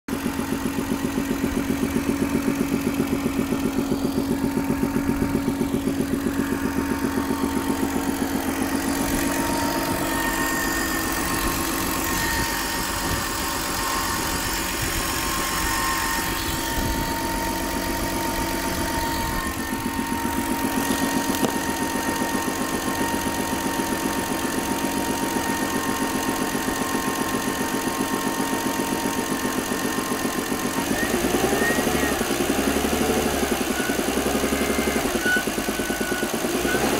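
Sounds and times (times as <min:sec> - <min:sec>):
car engine idling with knock: 0:00.1 - 0:36.9
high whistle: 0:08.6 - 0:28.7, 0:30.7 - 0:32.5.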